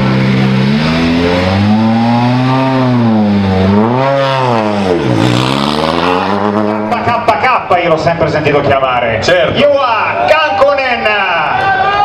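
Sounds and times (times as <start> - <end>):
rally car engine revving: 0.0 - 8.6.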